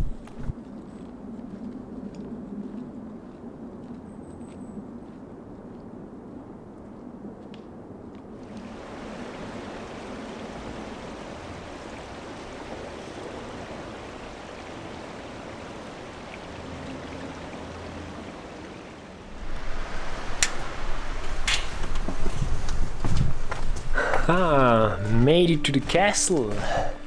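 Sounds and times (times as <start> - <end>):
stream water flowing: 8.4 - 23.2.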